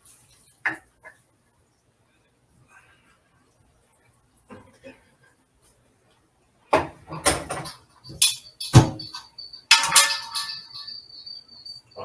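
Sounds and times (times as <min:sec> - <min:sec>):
thin high squeal: 0:07.6 - 0:12.0.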